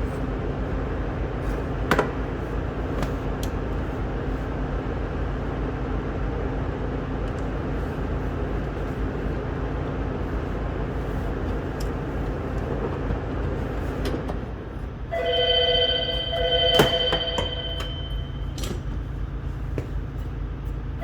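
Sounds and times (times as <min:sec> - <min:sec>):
phone ringing: 0:15.1 - 0:18.6.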